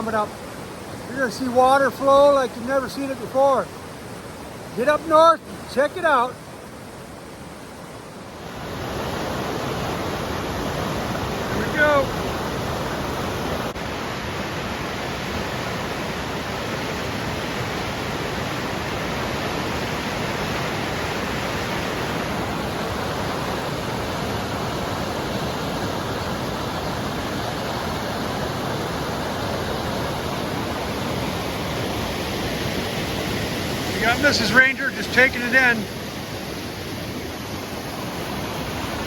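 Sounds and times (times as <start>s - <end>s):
waterfall rushing: 0.0s - 39.0s.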